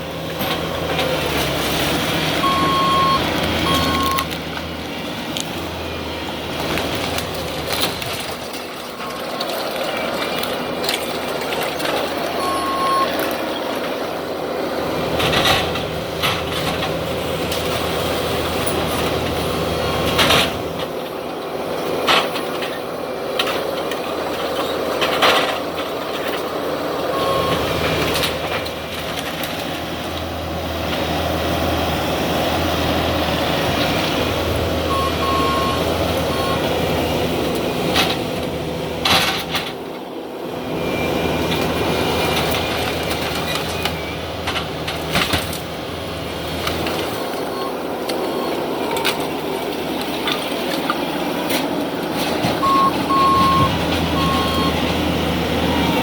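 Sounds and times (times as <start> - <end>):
demolition machinery running: 0.0 - 56.0
short beeps: 2.4 - 4.3, 12.4 - 13.2, 52.6 - 54.8
debris bangs and crunches: 6.5 - 12.4, 41.5 - 54.9.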